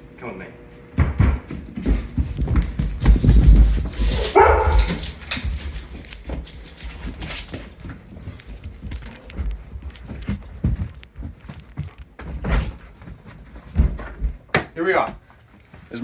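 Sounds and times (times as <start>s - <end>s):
heavy footsteps: 0.7s - 16.0s
dog whining: 3.9s - 6.5s.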